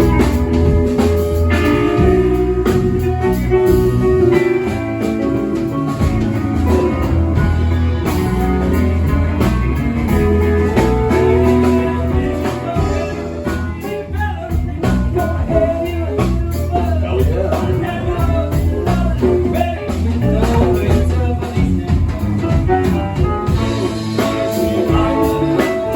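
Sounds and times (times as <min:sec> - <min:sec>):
bass: 0:00.0 - 0:25.9
electric guitar lines: 0:00.0 - 0:25.9
drum hits: 0:17.3 - 0:25.3.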